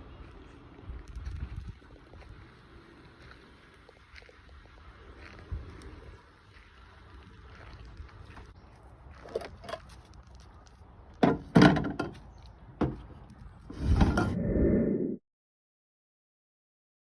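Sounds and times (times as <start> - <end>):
rustling rumble: 13.4 - 15.0.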